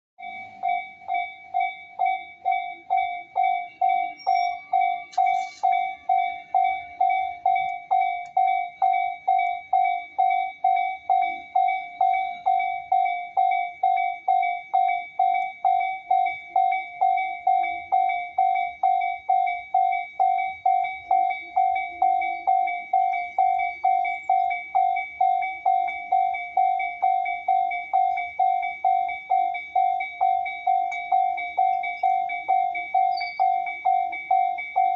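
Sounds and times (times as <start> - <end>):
level-crossing bell alarm ringing: 0.2 - 34.9.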